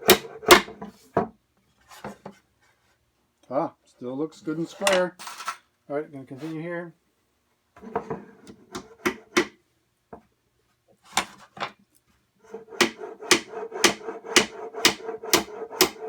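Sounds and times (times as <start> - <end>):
hammer driving nails into wood: 0.0 - 0.8, 8.8 - 9.6, 12.8 - 16.0.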